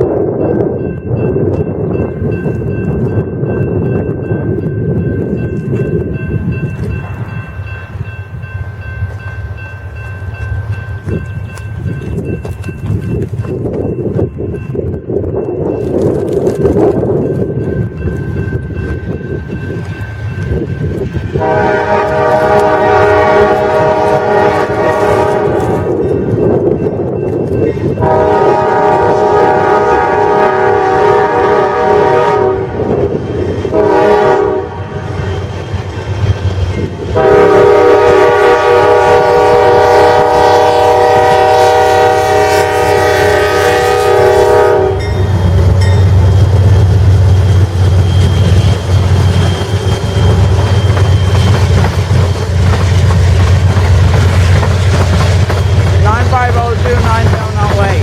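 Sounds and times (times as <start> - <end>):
train rumbling: 0.0 - 58.0
locomotive air horn blasts: 21.4 - 26.0, 28.0 - 32.9, 33.7 - 35.0, 37.2 - 45.2.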